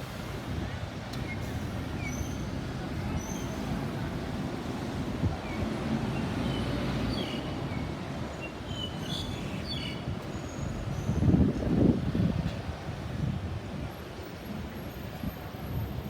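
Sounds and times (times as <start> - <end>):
road traffic rumble: 0.0 - 16.0.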